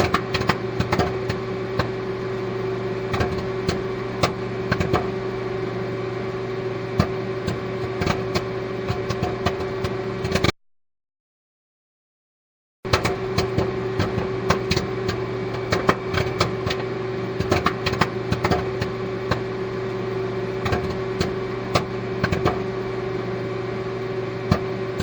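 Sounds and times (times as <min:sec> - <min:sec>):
steady machine hum: 0:00.0 - 0:10.5, 0:12.9 - 0:25.0
sharp clicks and pops: 0:12.9 - 0:16.8, 0:17.4 - 0:19.5.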